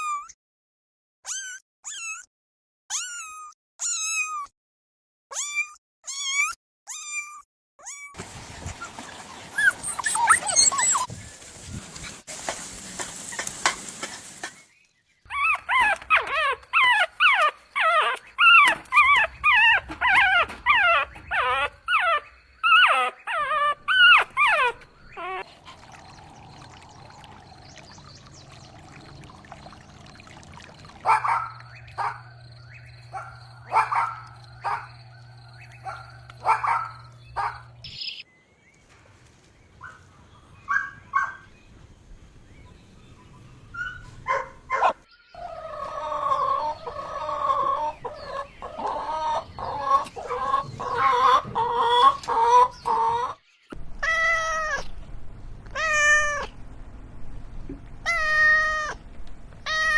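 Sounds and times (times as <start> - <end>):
puppies whining and yelping: 8.8 - 11.2, 15.3 - 30.0, 30.9 - 37.7, 43.8 - 53.4
steady low hum: 24.2 - 37.8.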